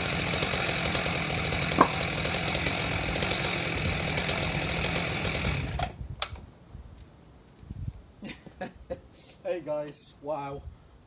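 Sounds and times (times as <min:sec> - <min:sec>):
chainsaw running: 0:00.0 - 0:06.0
sharp knocks: 0:01.6 - 0:02.3.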